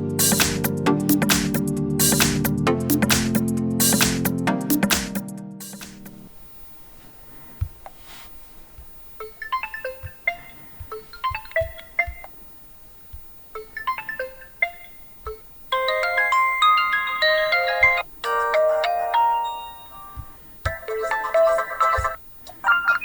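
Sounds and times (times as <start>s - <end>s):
phone ringtone melodies: 15.7s - 23.0s.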